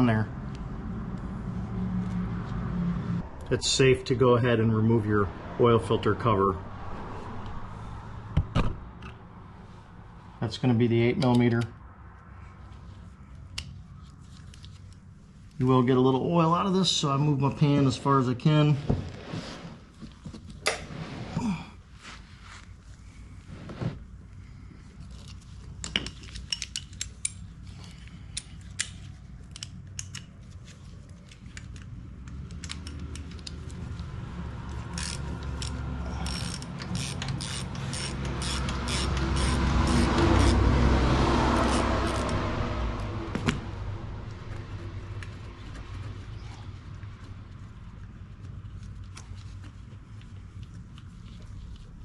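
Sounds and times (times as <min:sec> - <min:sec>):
ratchet clicking: 0:34.7 - 0:40.6.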